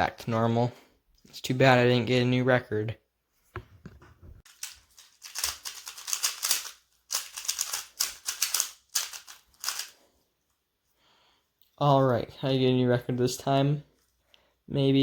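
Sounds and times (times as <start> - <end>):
puzzle cube layers clicking: 4.5 - 9.9.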